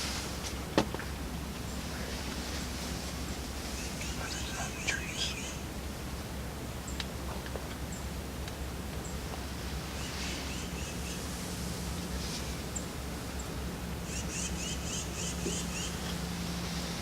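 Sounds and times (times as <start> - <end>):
songbirds calling: 0.0 - 17.0
steady low hum: 0.0 - 17.0.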